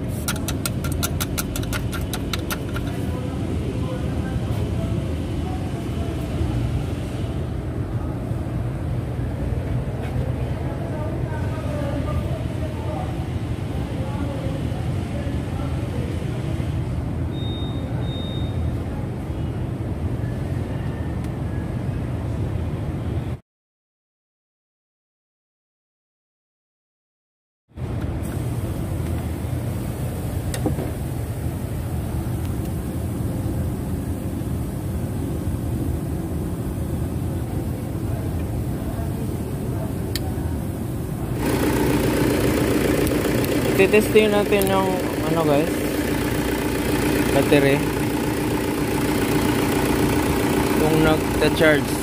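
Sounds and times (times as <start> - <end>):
car engine idling: 0.1 - 3.2, 41.4 - 52.0.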